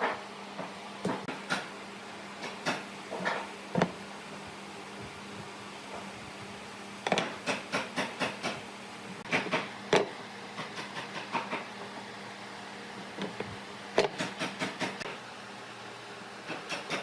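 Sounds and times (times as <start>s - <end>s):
sharp knocks and clicks: 7.0s - 8.6s, 9.2s - 11.7s, 13.2s - 15.0s.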